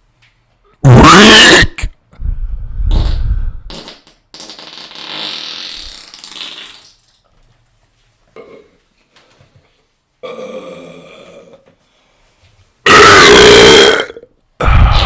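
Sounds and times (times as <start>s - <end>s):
person burping: 0.8s - 2.0s, 8.4s - 8.8s, 10.2s - 11.6s, 12.9s - 15.0s.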